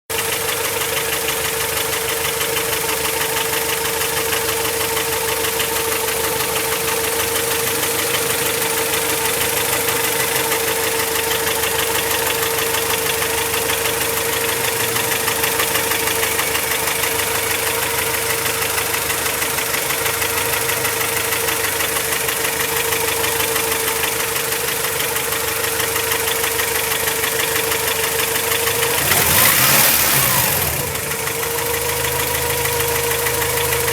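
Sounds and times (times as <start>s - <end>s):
car engine idling with ticking knock: 0.1s - 33.9s
engine revving: 4.0s - 23.6s, 25.5s - 33.9s
engine whine: 4.6s - 21.8s, 27.5s - 33.9s.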